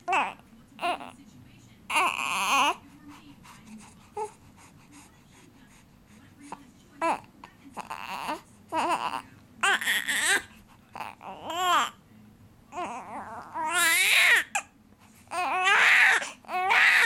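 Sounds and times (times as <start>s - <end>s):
small child crying: 12.8s - 14.6s, 15.3s - 17.0s.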